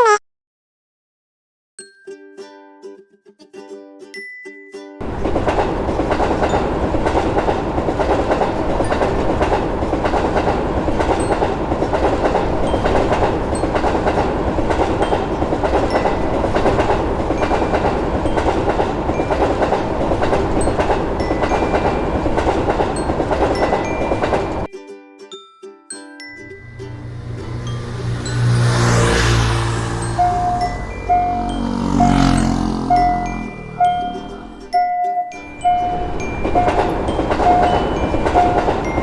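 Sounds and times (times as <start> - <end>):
train rumbling past: 5.0 - 24.7, 26.5 - 34.9, 35.6 - 39.0
train wheel clacks: 5.0 - 24.7, 36.4 - 39.0.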